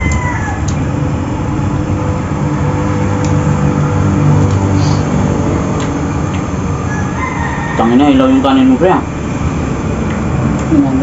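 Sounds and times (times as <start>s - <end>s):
low motor hum: 0.0s - 7.2s.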